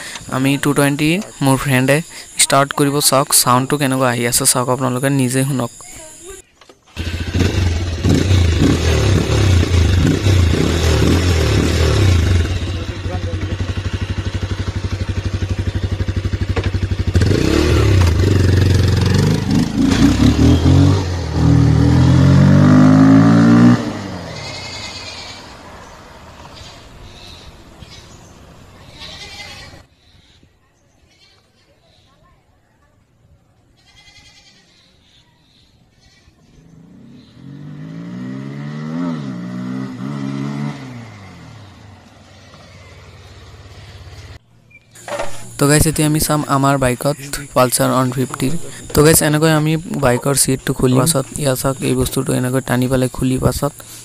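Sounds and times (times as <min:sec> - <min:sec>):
motorcycle engine idling and revving: 0:05.9 - 0:29.9, 0:36.4 - 0:54.0.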